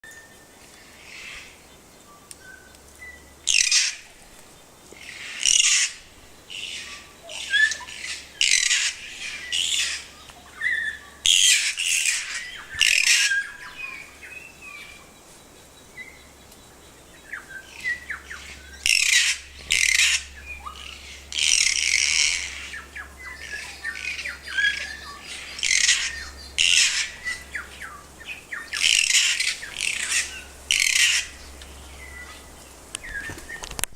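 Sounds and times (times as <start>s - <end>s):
parrot squawking harshly: 5.4s - 6.0s.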